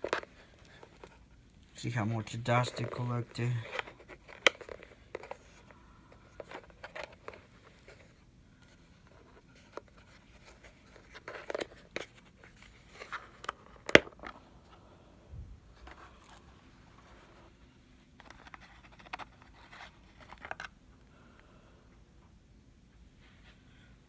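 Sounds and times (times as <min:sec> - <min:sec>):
plastic clicks and handling: 0:02.6 - 0:08.0, 0:09.6 - 0:12.2, 0:13.0 - 0:14.4.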